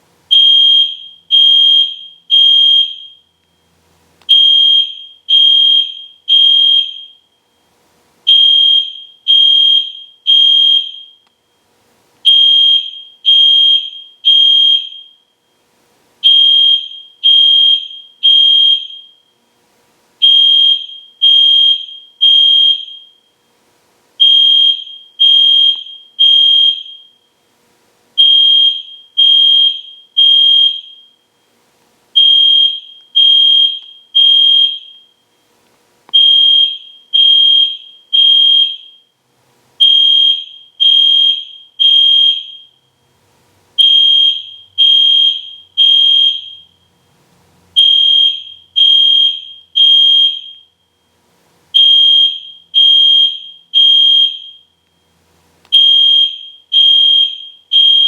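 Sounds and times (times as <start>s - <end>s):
fire alarm horn beeping: 0.3s - 3.3s, 4.3s - 7.3s, 8.3s - 11.4s, 12.2s - 15.4s, 16.2s - 19.4s, 20.2s - 23.4s, 24.2s - 27.3s, 28.2s - 31.3s, 32.2s - 35.2s, 36.1s - 39.2s, 39.8s - 42.9s, 43.8s - 47.0s, 47.8s - 51.1s, 51.7s - 54.8s, 55.7s - 58.0s.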